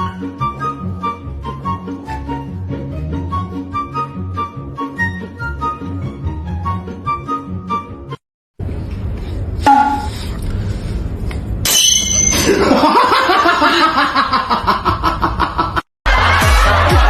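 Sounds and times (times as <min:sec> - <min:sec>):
music with a heavy beat: 0:16.1 - 0:17.0.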